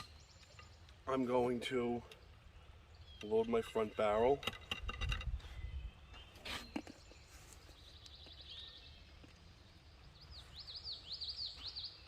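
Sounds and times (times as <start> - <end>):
bird chirping trill: 0.0 - 1.2, 2.1 - 9.2.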